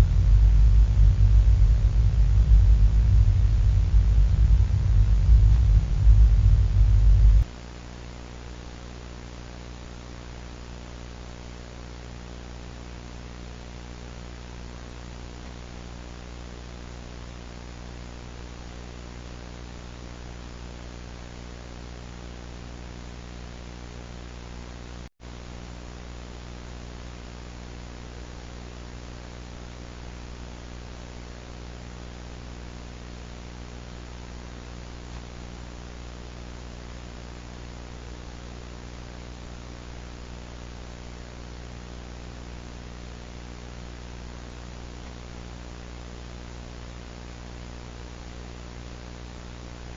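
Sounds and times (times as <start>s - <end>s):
static hiss: 0.0s - 7.4s
loud low rumble: 0.0s - 7.5s
low buzzing hum: 0.0s - 7.5s.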